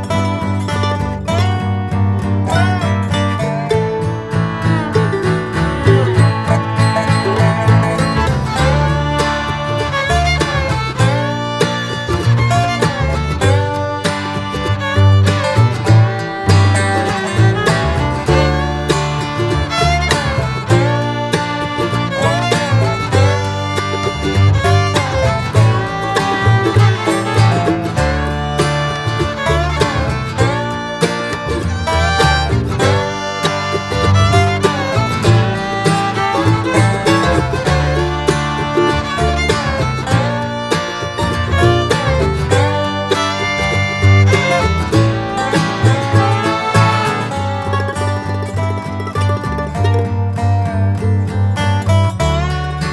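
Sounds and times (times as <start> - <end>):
bluegrass tune with fiddle and guitar: 0.0 - 52.9.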